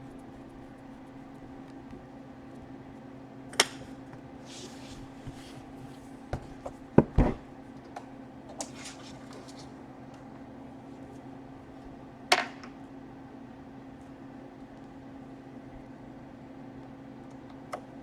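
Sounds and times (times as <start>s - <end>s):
steady low hum: 0.0s - 16.8s.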